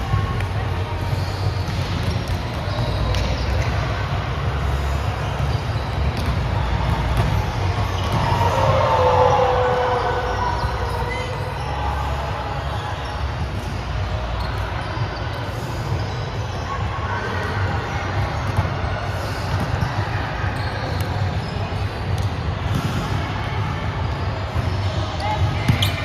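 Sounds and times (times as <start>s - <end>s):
echoing hall rumble: 0.0s - 19.4s
players' voices: 0.0s - 26.0s.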